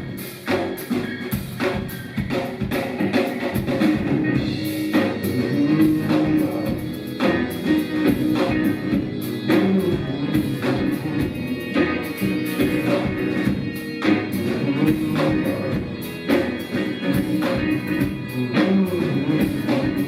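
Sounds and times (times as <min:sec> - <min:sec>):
live rock band playing: 0:00.0 - 0:20.0.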